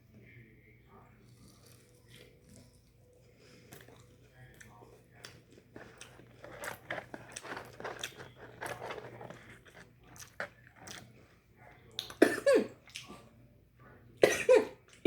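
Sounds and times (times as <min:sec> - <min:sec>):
person chewing and crunching food: 0:01.2 - 0:13.3
loud cough: 0:12.2 - 0:12.8, 0:14.2 - 0:14.8.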